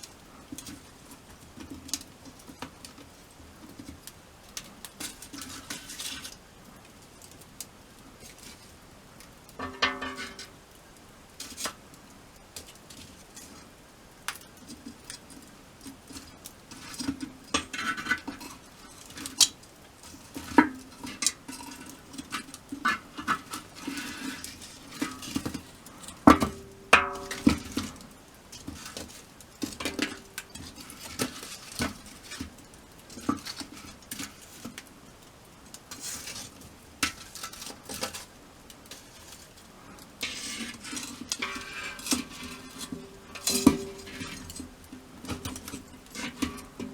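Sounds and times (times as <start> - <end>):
metal cookware clinking: 9.6 - 10.6, 26.2 - 28.0, 29.7 - 30.8, 40.2 - 46.9.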